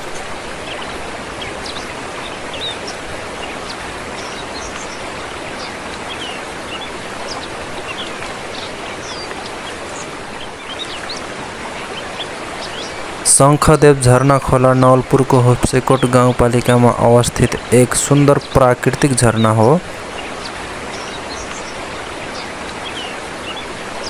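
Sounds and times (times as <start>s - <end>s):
waterfall stream rushing: 12.7s - 20.1s.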